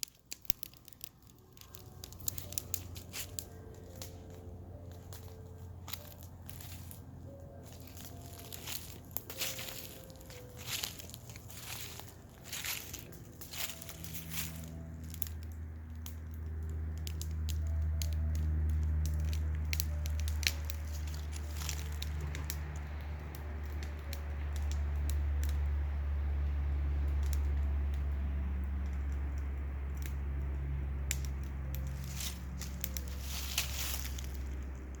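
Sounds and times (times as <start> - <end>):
wood fire crackling: 0.0 - 35.0
low rumble: 0.3 - 35.0.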